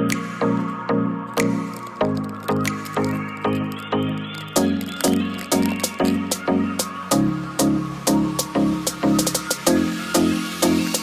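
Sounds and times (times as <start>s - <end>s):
electronic music with steady beat: 1.3s - 6.5s.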